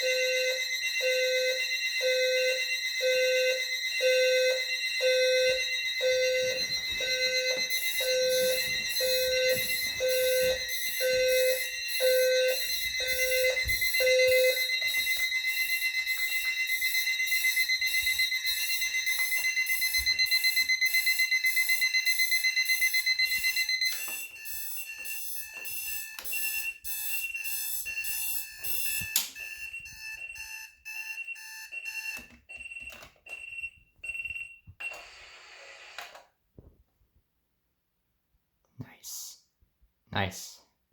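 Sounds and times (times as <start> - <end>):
loud rapid alarm trill: 0.0 - 32.0
electronic alarm clocks beeping: 0.0 - 36.2.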